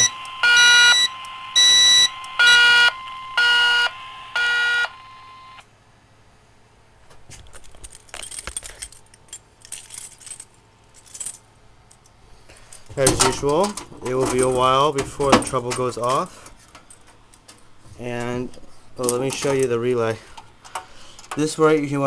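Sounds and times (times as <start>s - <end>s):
fire alarm horns pulsing: 0.0s - 5.6s
keys jangling and clicking: 7.3s - 21.9s.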